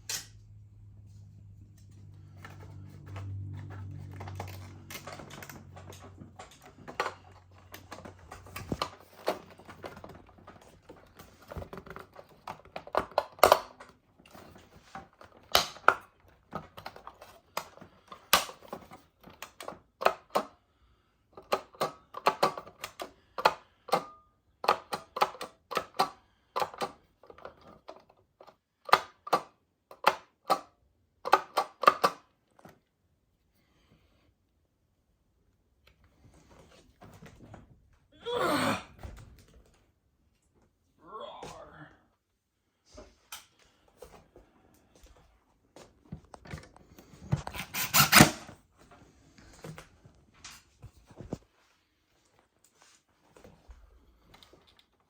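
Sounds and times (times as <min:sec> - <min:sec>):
plastic parts rattling: 0:02.4 - 0:20.4.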